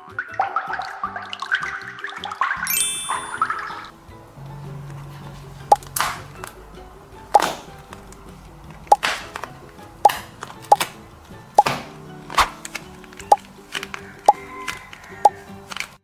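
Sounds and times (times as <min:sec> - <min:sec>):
soft background music: 0:00.0 - 0:16.0
sharp pop-like clicks: 0:07.3 - 0:15.9.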